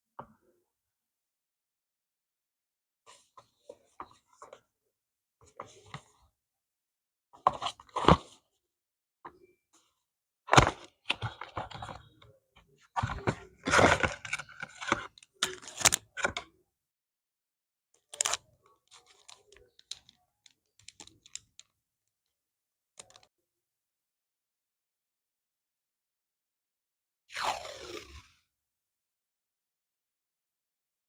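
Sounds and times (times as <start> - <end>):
packaging rustling and clicking: 13.1 - 16.4, 18.1 - 20.2, 20.8 - 21.7.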